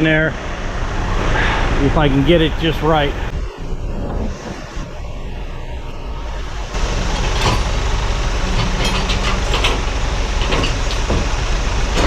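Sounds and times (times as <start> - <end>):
machine engine running: 0.6 - 12.0
sharp metal clanks: 6.7 - 11.3.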